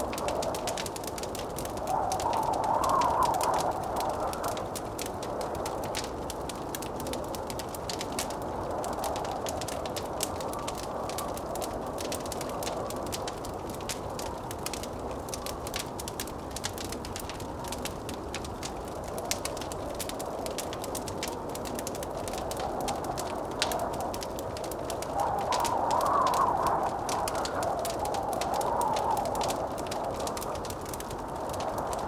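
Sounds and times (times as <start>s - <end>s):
rushing blizzard wind: 0.0s - 32.0s
wood fire crackling: 0.0s - 32.0s.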